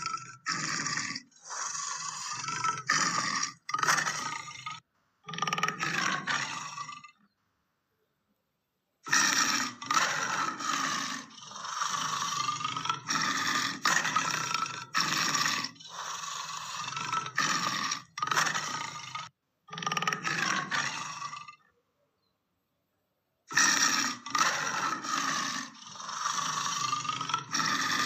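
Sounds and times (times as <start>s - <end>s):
lion roaring and growling: 0.0s - 7.2s, 9.1s - 21.7s, 23.5s - 28.0s.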